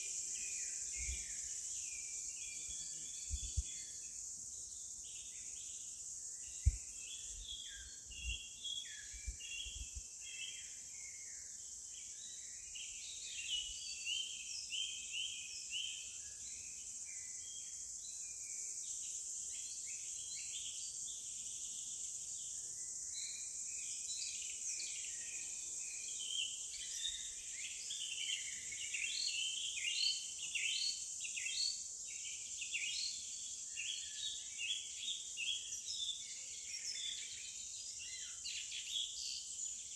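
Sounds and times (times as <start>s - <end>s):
insect drone: 0.0s - 39.9s.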